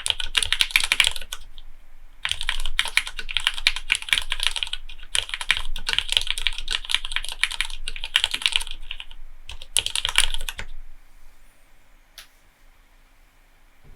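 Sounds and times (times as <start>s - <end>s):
typing on mechanical keyboard: 0.0s - 1.5s, 2.2s - 10.7s.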